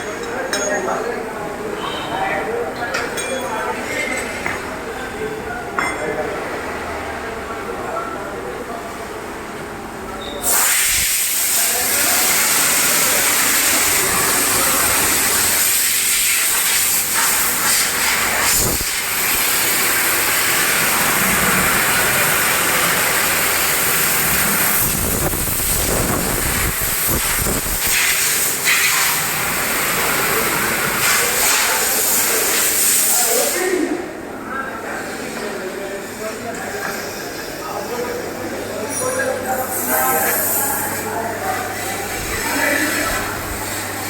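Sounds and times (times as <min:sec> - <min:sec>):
high-pressure spray hissing: 0:10.4 - 0:33.7, 0:39.6 - 0:41.1.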